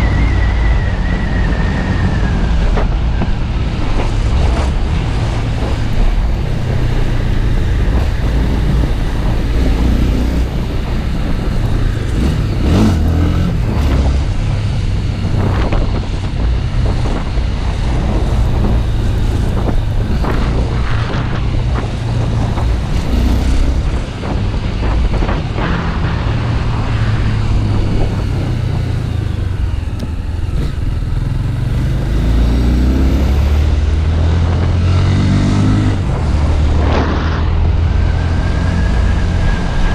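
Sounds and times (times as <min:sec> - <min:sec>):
wind noise on microphone: 0:00.0 - 0:39.9
motorcycle engine running: 0:03.1 - 0:32.9.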